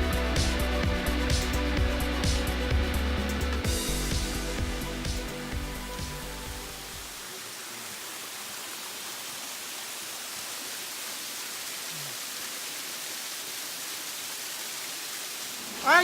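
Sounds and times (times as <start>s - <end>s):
waterfall rushing: 6.6s - 16.0s.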